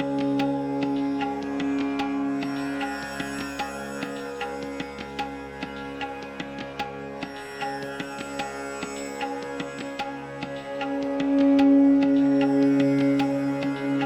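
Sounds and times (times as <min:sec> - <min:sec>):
held drone tones: 0:00.0 - 0:05.1, 0:09.8 - 0:14.0.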